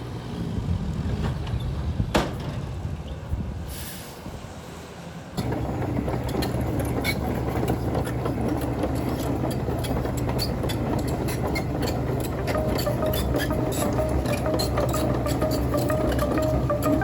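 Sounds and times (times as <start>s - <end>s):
diesel engine running: 5.4s - 17.0s.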